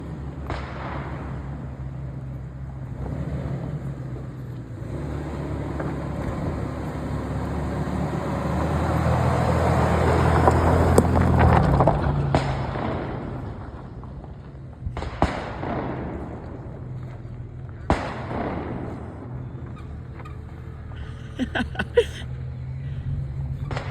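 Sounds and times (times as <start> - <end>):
car engine running under load: 0.0 - 23.9.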